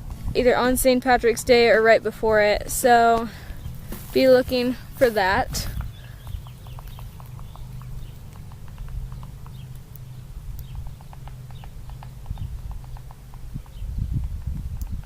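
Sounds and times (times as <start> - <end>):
woodpecker pecking at wood: 5.6 - 15.0.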